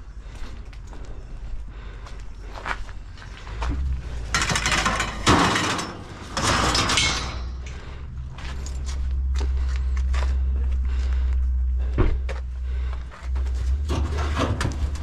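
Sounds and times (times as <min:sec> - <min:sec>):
sharp metal clank: 0:04.4 - 0:07.7.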